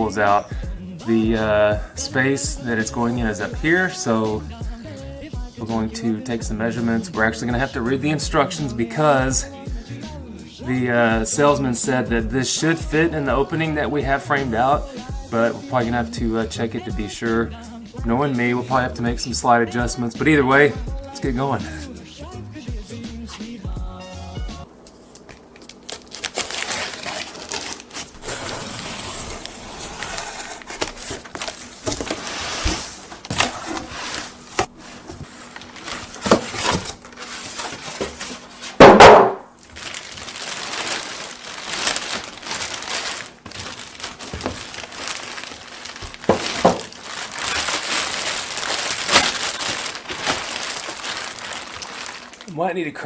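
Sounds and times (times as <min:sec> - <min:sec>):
rustling and crinkling: 0:24.8 - 0:39.0, 0:39.6 - 0:52.6
loud short thump: 0:38.8 - 0:39.5.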